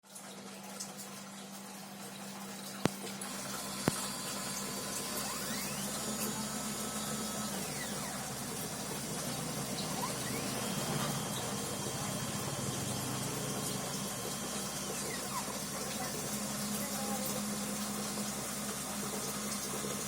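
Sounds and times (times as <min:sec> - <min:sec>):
cnc router motor hum: 0:03.3 - 0:20.0
faint whines: 0:03.4 - 0:15.6.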